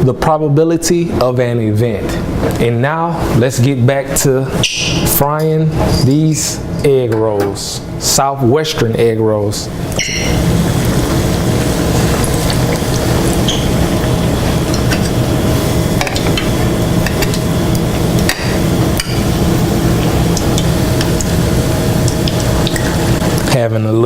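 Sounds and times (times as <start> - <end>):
steady low hum: 0.0 - 24.0
food sizzling in hot oil: 9.8 - 23.5.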